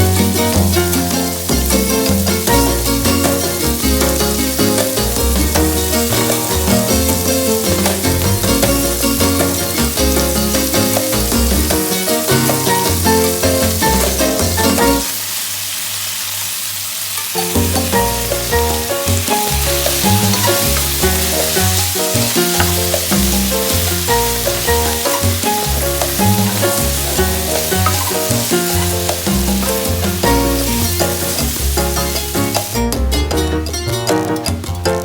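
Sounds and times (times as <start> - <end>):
background music with bass line: 0.0 - 15.1, 17.4 - 35.0
food sizzling in a pan: 0.0 - 33.0.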